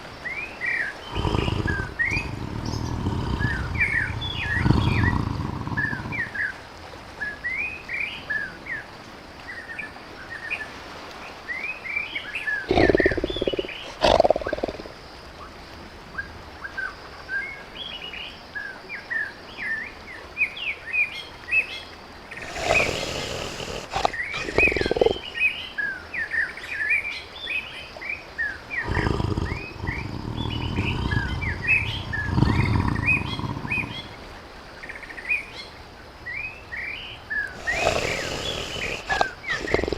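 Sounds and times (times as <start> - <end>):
small birds chirping: 0.9 - 6.4, 12.6 - 14.8, 22.3 - 25.7, 28.8 - 34.2, 36.8 - 39.9
tiger roaring and growling: 1.0 - 6.4, 12.7 - 14.9, 22.4 - 25.2, 28.8 - 34.2, 37.5 - 39.9.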